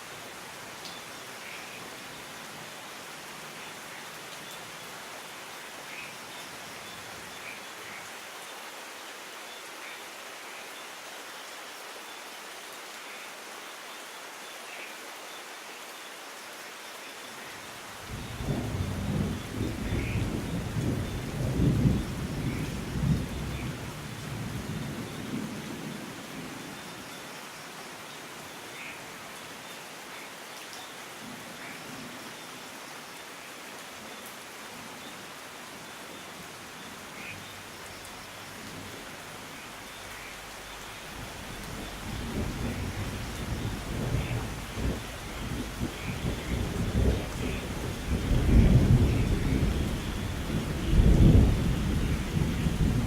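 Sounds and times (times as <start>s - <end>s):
rain hiss: 0.0s - 53.0s
thunder rumbling: 18.1s - 25.0s, 41.2s - 53.0s.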